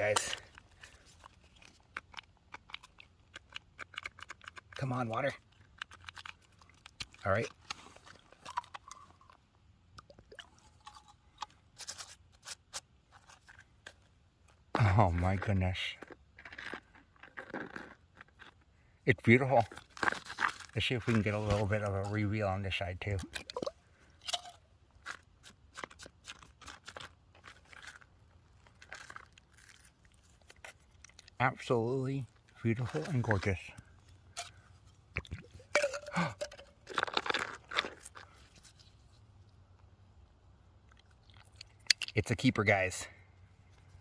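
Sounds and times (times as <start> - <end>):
rock crunching and clicking: 0.0 - 9.4, 24.3 - 38.6
rock scraping: 14.7 - 23.6, 25.0 - 39.0.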